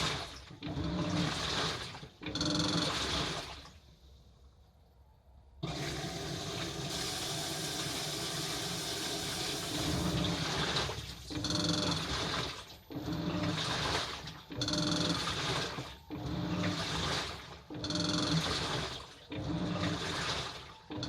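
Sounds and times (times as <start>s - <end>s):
washing machine motor whining: 0.0s - 3.8s, 5.6s - 21.0s
water sloshing: 0.0s - 3.8s, 9.9s - 21.0s.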